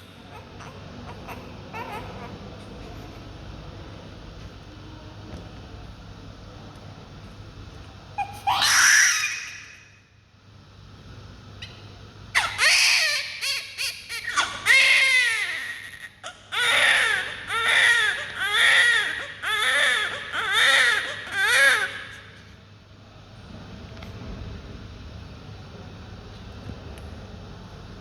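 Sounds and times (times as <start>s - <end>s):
baby crying: 0.3s - 2.4s, 8.2s - 9.8s, 12.4s - 22.2s.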